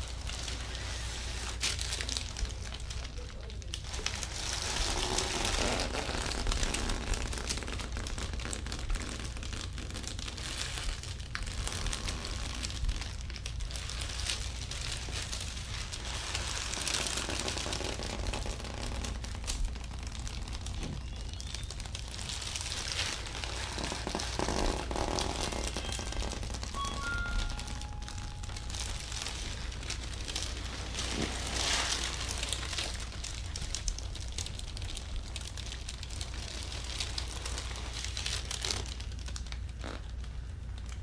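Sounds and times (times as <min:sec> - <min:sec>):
hands rustling over skin and cloth: 0:04.2 - 0:33.8.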